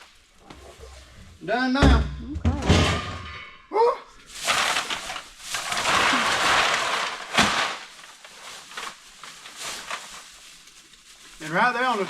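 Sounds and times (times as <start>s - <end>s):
cans rattling in bags: 4.3s - 12.0s.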